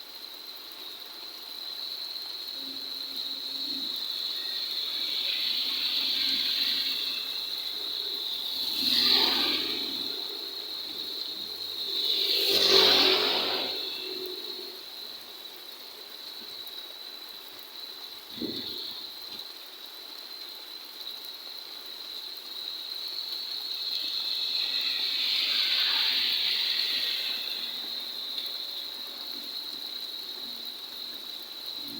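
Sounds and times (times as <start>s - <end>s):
rain: 0.0s - 31.9s
water rushing over road: 4.4s - 14.8s, 24.0s - 28.4s.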